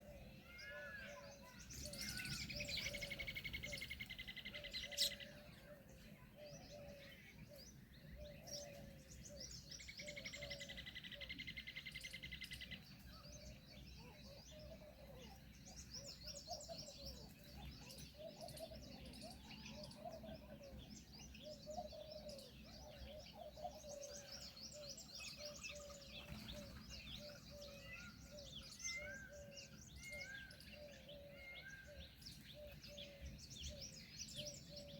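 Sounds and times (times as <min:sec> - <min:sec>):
birds chirping and calling: 0:00.0 - 0:34.9.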